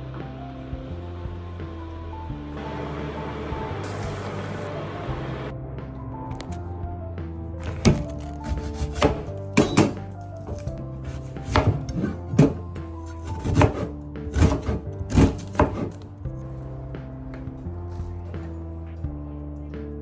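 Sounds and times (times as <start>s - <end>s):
background music: 0.0s - 20.0s
knife chopping on cutting board: 7.6s - 16.0s.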